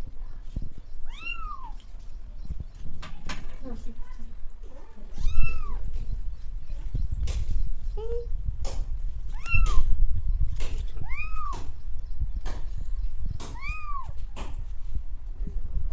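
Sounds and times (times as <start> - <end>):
cat meowing: 1.1 - 1.8, 5.0 - 5.9, 9.3 - 9.9, 11.0 - 11.7, 13.5 - 14.2.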